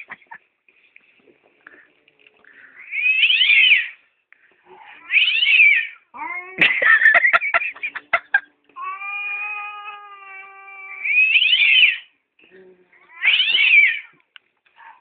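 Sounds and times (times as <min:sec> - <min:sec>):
cat screeching: 0:02.8 - 0:04.0, 0:05.0 - 0:06.6, 0:08.8 - 0:12.1, 0:13.0 - 0:14.2
cat yowling: 0:02.8 - 0:04.0, 0:05.0 - 0:06.7, 0:08.8 - 0:12.1, 0:13.0 - 0:14.1.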